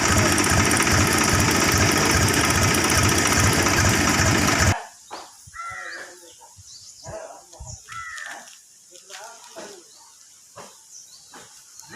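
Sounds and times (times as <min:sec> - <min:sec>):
chainsaw engine running: 0:00.0 - 0:04.8.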